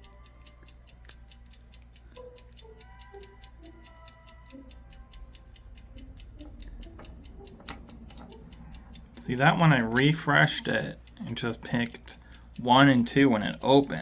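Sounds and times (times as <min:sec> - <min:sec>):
lock pick clicking: 0:06.4 - 0:08.5, 0:09.8 - 0:10.2.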